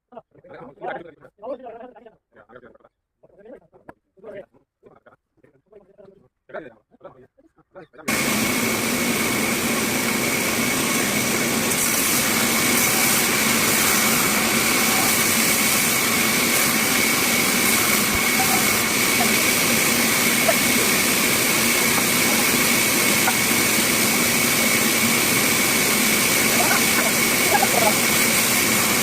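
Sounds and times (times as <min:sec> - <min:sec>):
bandsaw running: 0:08.1 - 0:29.0.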